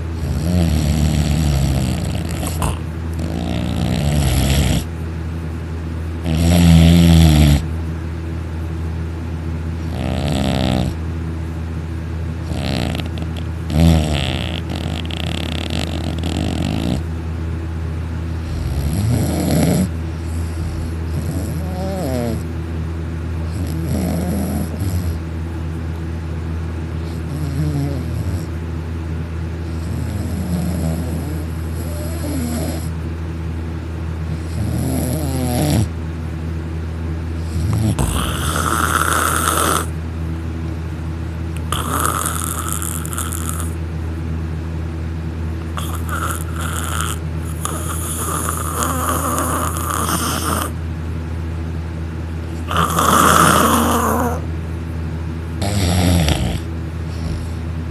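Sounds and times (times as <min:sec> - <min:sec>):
man snoring loudly: 0:00.0 - 0:04.9, 0:06.2 - 0:07.7, 0:09.8 - 0:11.0, 0:12.4 - 0:17.1, 0:18.4 - 0:22.5, 0:23.5 - 0:25.2, 0:27.1 - 0:28.5, 0:29.7 - 0:32.9, 0:34.4 - 0:35.9, 0:37.4 - 0:39.9, 0:41.6 - 0:43.8, 0:45.7 - 0:50.8, 0:52.6 - 0:54.5, 0:55.6 - 0:57.5
steady low hum: 0:00.0 - 0:57.9.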